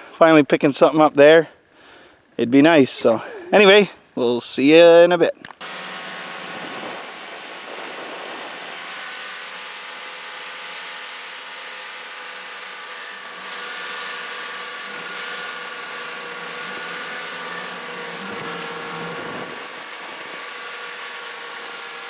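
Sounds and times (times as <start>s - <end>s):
snowmobile engine running: 5.6s - 22.0s.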